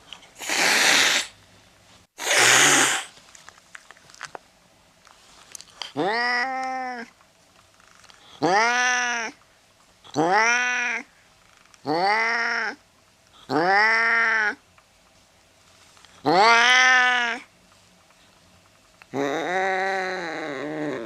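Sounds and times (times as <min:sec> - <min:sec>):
cat yowling: 0:06.0 - 0:07.1, 0:08.4 - 0:09.4, 0:10.2 - 0:11.1, 0:11.9 - 0:12.8, 0:13.5 - 0:14.6, 0:16.3 - 0:17.5.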